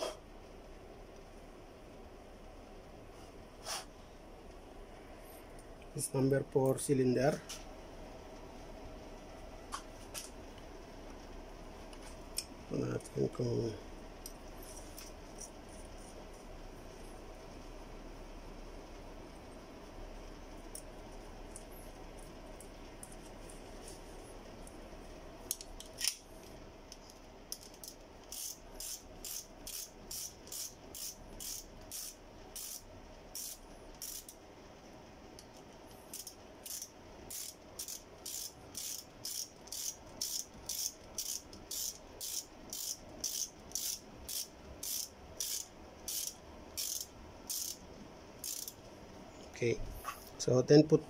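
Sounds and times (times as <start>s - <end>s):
ratchet wrench clicking: 27.5s - 34.4s, 36.1s - 47.8s, 48.4s - 48.8s.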